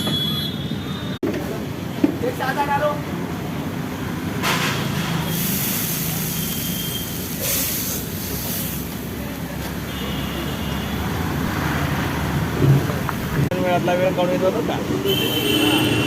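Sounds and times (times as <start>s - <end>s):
street low hum: 0.0s - 16.0s
high hissing bursts: 5.2s - 9.1s.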